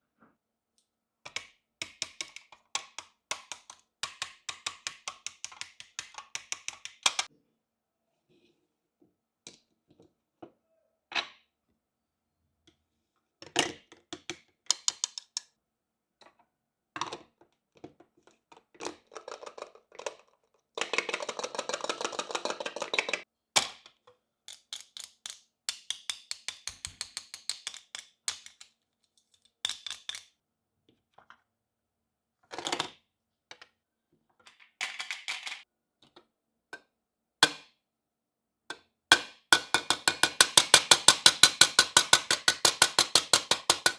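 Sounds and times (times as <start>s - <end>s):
plastic pieces clicking and crackling: 1.3s - 7.3s, 19.0s - 23.8s, 24.5s - 30.3s, 39.6s - 43.9s.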